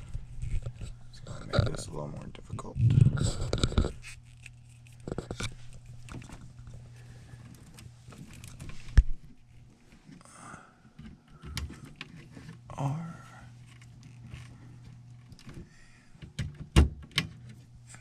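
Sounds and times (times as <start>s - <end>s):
low hum: 0.0s - 11.8s.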